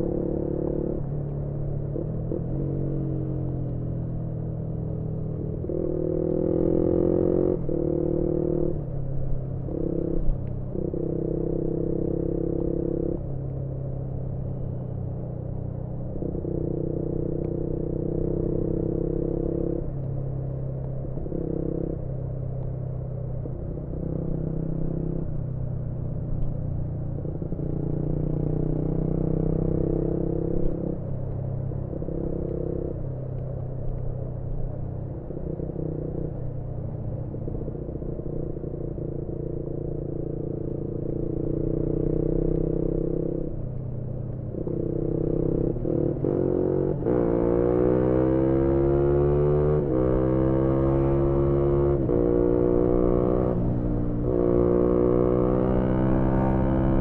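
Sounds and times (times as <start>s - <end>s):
motorcycle engine revving: 38.3s - 43.6s, 44.5s - 57.0s.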